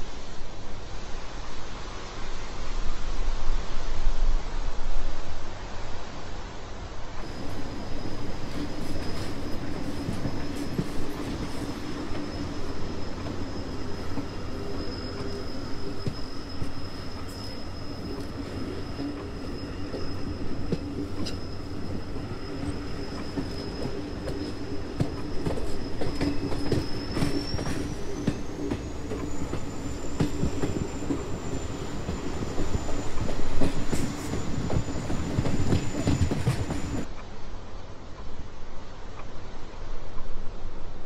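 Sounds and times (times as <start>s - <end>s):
train rumbling on rails: 0.0s - 41.0s
thin high whine: 7.2s - 37.1s.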